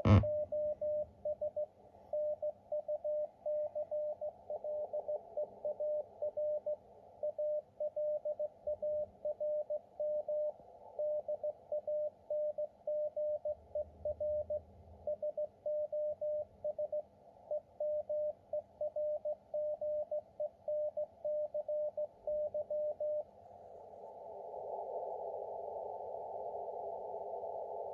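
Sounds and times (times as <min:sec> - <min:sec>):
radio receiver hiss: 0:00.0 - 0:00.3
morse code tone: 0:00.0 - 0:00.5.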